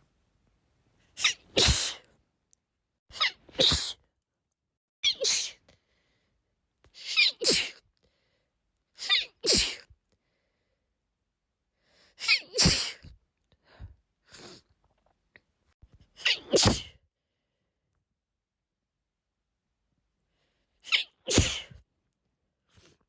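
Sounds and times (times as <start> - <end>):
woman sneezing: 1.2 - 2.0, 3.2 - 4.0, 7.0 - 7.8, 12.2 - 13.1, 16.2 - 17.0, 20.9 - 21.8.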